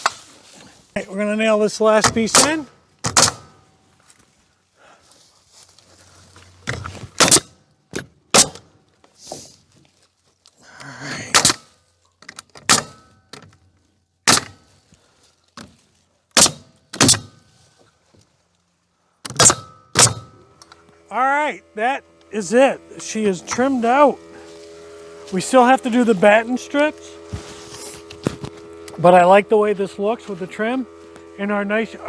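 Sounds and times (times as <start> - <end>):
hammer driving nails into wood: 2.0 - 3.6, 6.7 - 7.6, 8.3 - 8.7, 11.3 - 11.7, 12.5 - 13.4, 14.3 - 14.7, 16.4 - 17.4, 19.2 - 20.4.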